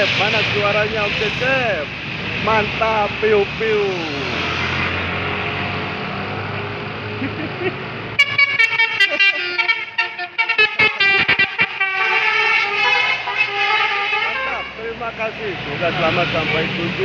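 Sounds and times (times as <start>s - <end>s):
bus engine running: 0.0s - 17.0s
bus horn melody: 8.2s - 14.8s.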